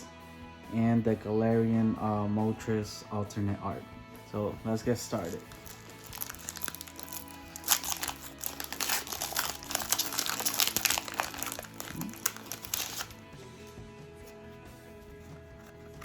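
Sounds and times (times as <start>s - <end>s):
background music: 0.0s - 16.0s
foil wrapper crinkling: 5.1s - 13.4s.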